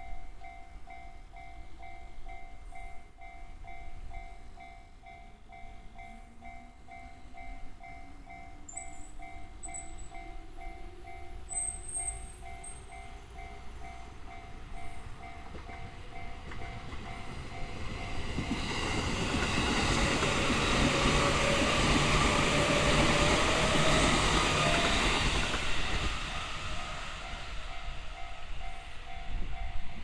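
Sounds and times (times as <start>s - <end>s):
level crossing warning bell: 0.0s - 30.0s
electric train rumble: 3.2s - 30.0s.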